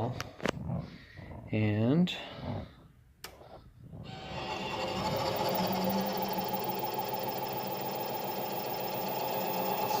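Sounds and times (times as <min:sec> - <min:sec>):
metal lathe whirring: 0:04.1 - 0:10.0.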